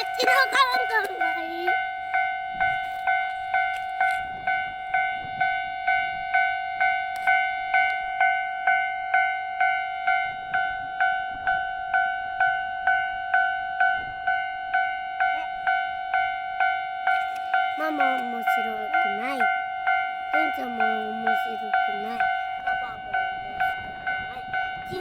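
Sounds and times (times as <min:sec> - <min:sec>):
level crossing warning bell: 0:00.0 - 0:25.0.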